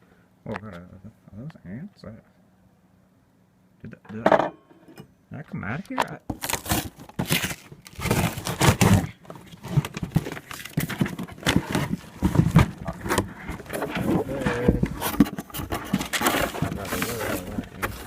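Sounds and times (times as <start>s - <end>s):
paper and cardboard crinkling: 6.3s - 18.0s
box knocking: 8.0s - 18.0s.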